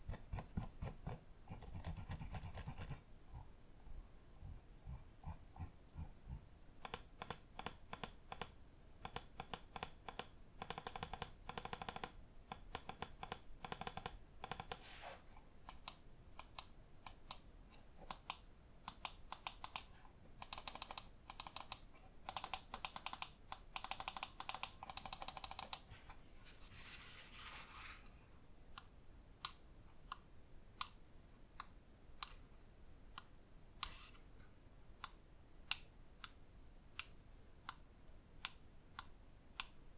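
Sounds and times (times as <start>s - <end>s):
mouse buttons clicking: 18.1s - 25.8s.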